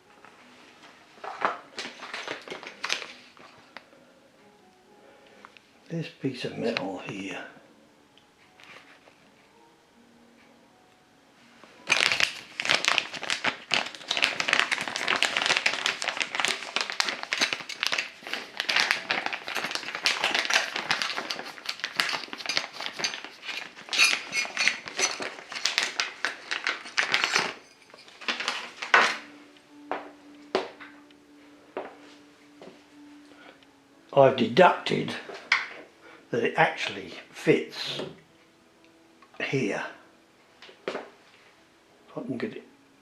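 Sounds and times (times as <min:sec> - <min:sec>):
metal parts clinking: 0:17.3 - 0:18.0, 0:20.5 - 0:26.0, 0:26.6 - 0:29.2.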